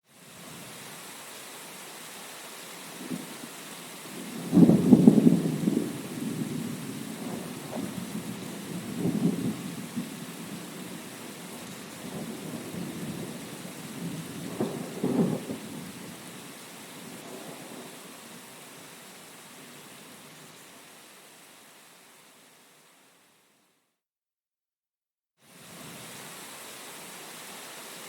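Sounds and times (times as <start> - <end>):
heavy rain: 0.0 - 23.4, 25.5 - 28.0
thunder rumbling and cracking: 4.3 - 16.1.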